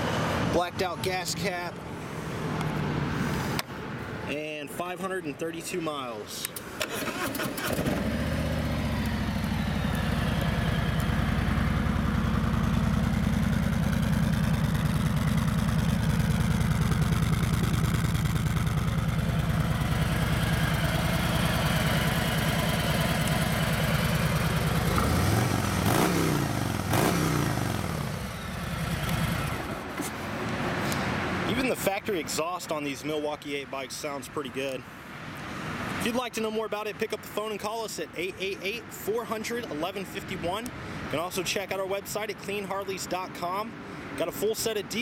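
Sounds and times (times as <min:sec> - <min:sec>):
motorcycle engine idling and revving: 0:07.0 - 0:30.0.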